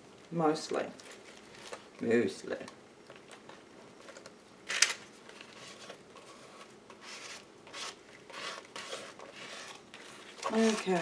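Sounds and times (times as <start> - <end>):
paper rustling: 4.1 - 11.0.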